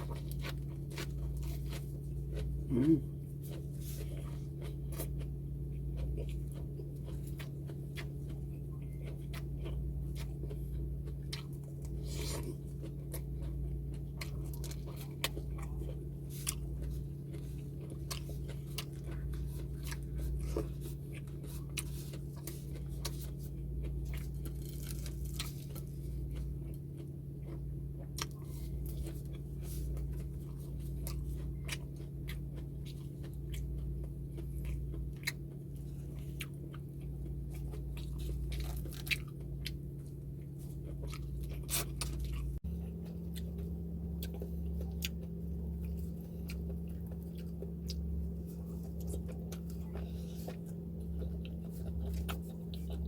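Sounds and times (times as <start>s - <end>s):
chewing and crunching food: 0.0s - 53.0s
low hum: 0.0s - 53.0s.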